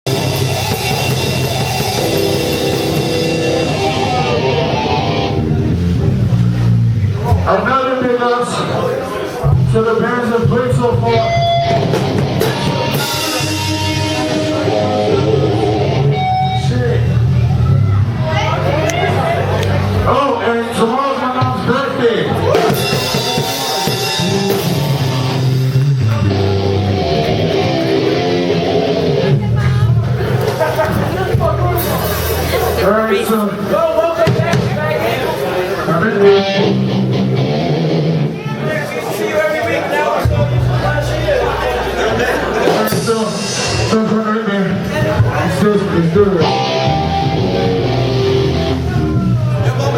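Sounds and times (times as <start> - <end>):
drum kit: 0.0 - 7.6, 10.4 - 20.0, 21.4 - 32.9, 40.2 - 45.5, 46.4 - 49.9
electric guitar: 0.1 - 7.5, 9.5 - 20.1, 22.3 - 33.6, 34.2 - 38.7, 41.9 - 49.9
live rock band playing: 0.1 - 7.7, 9.1 - 20.2, 21.1 - 39.2, 40.2 - 49.9.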